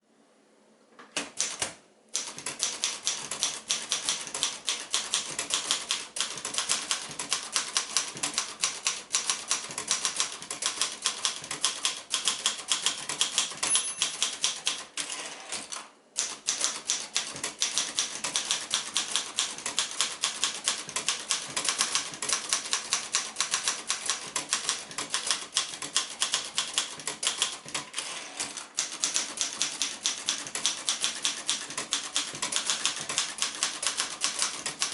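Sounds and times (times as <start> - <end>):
typewriter keystrokes clacking: 1.1 - 34.9
typewriter bell ring: 13.5 - 14.6.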